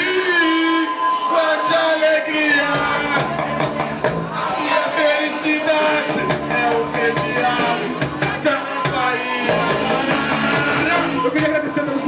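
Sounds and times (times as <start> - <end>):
live rock band playing: 2.7 - 4.4, 5.7 - 11.8
drum hits: 2.8 - 4.5, 6.2 - 11.6.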